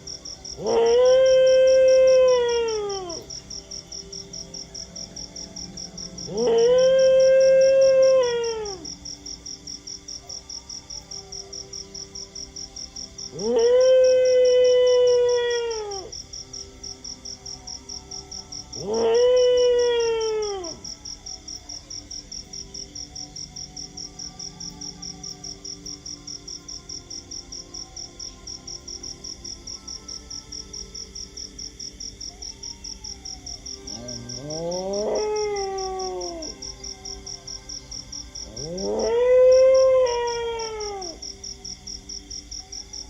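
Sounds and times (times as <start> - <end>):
dogs howling: 0.0 - 3.4, 5.8 - 9.1, 13.2 - 16.4, 17.9 - 21.8, 32.4 - 37.3, 38.4 - 41.4
insect chirping: 0.0 - 43.0.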